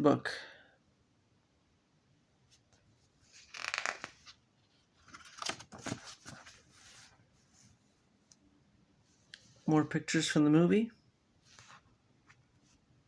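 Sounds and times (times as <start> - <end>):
paper pages rustling: 3.1 - 7.8.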